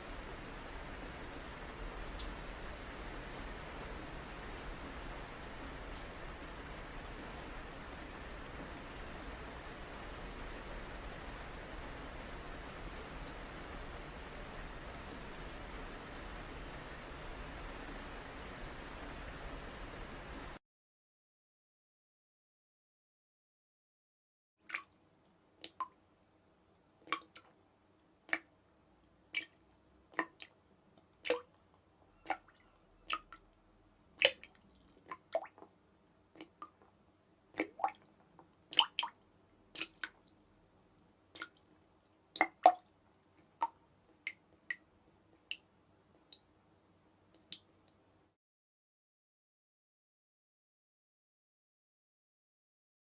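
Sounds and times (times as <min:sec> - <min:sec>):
faint steady background noise: 0:00.0 - 0:20.6, 0:24.6 - 0:48.4
water drops plopping: 0:27.1 - 0:27.5, 0:37.6 - 0:38.1, 0:38.7 - 0:39.2, 0:42.4 - 0:42.8.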